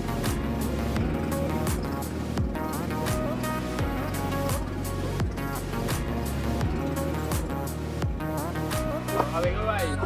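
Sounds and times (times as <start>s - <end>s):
steady drum beat: 0.0s - 10.0s.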